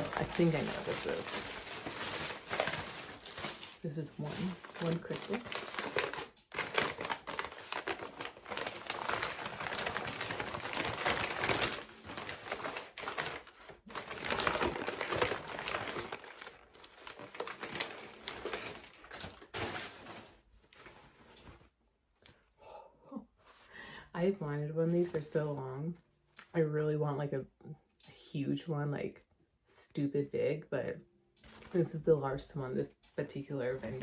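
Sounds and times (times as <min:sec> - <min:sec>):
packing material crinkling: 0:00.0 - 0:21.7.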